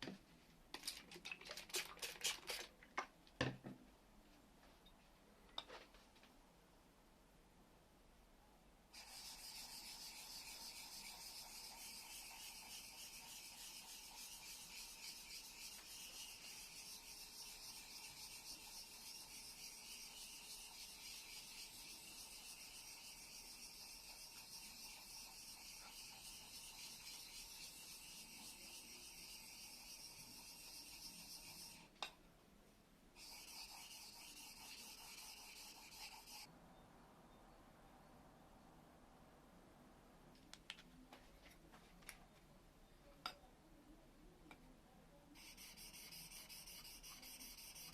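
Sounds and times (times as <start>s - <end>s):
blade honing on sharpening stone: 9.0s - 31.8s.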